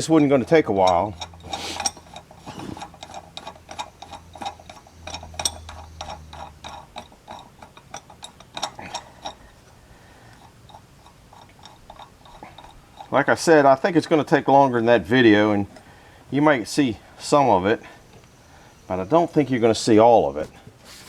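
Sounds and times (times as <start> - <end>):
tools and metal parts clicking: 0.0 - 9.6, 10.3 - 13.2.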